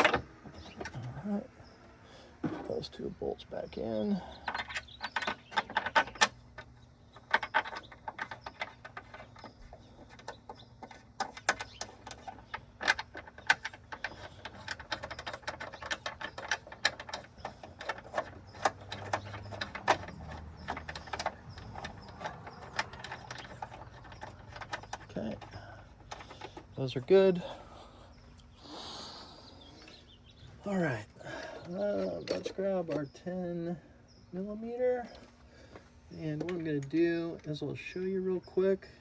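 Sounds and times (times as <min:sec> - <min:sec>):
metal tools clicking: 0:11.2 - 0:26.7.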